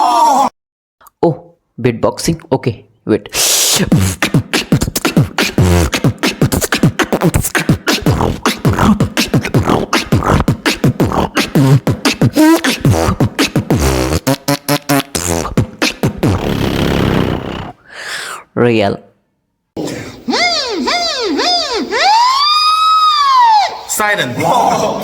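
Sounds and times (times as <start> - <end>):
person beatboxing: 3.3 - 17.8.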